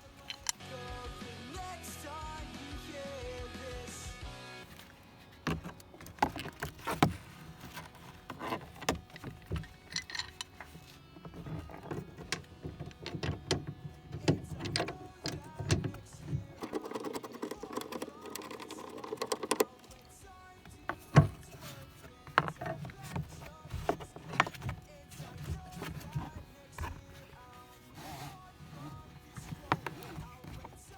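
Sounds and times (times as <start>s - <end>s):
tools and parts clicking: 0.0s - 0.6s, 4.7s - 30.9s.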